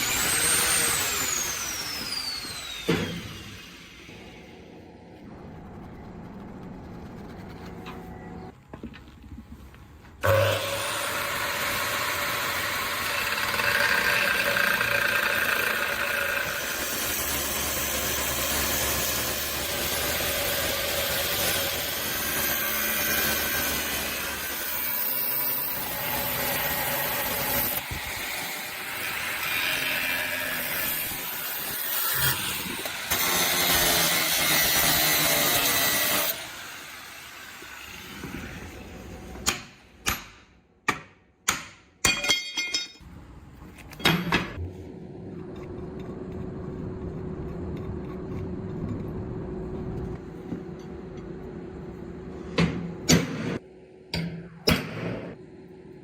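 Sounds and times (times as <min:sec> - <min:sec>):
power tool working steel: 0:00.0 - 0:05.0, 0:10.2 - 0:39.4.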